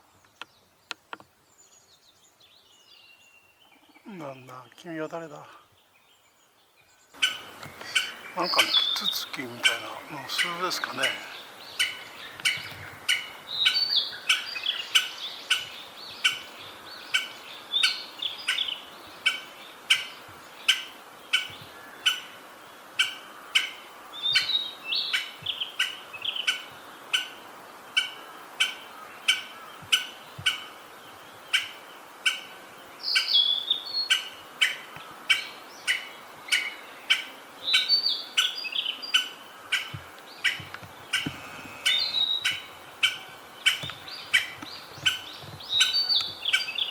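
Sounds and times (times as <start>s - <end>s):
birdsong phrases: 4.0s - 5.7s, 7.7s - 11.5s.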